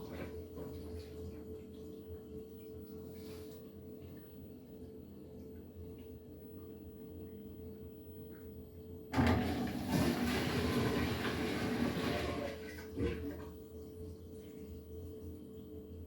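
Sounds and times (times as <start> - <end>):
washing machine humming: 0.0 - 16.0
water swirling in drum: 9.2 - 15.2.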